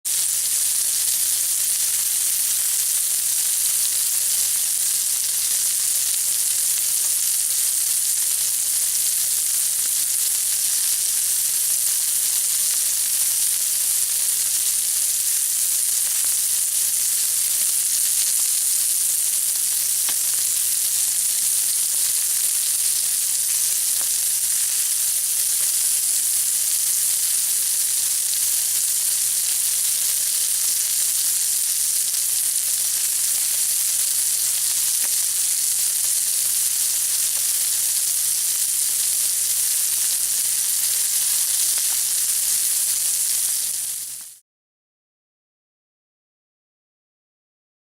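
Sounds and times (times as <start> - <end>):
burgers sizzling on a griddle: 0.1 - 44.4.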